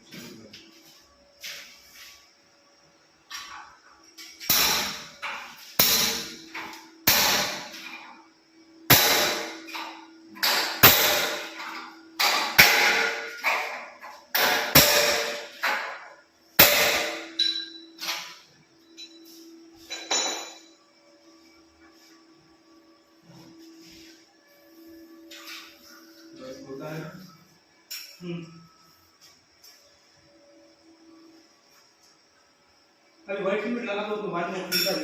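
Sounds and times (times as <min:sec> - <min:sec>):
hammer blows ringing: 0:05.8 - 0:07.8, 0:08.9 - 0:09.7, 0:10.4 - 0:11.6, 0:12.2 - 0:13.5, 0:14.4 - 0:15.9, 0:16.6 - 0:17.9.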